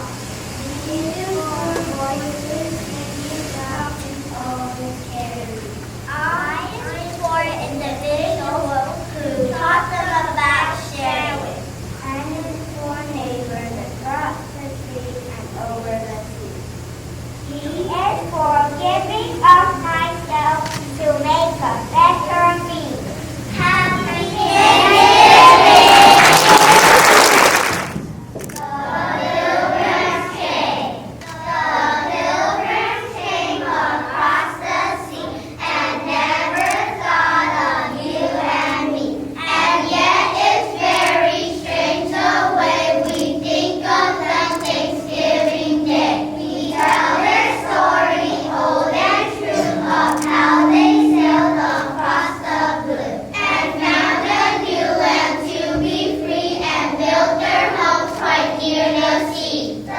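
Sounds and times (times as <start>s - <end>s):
children singing: 23.5s - 27.1s, 28.6s - 59.9s.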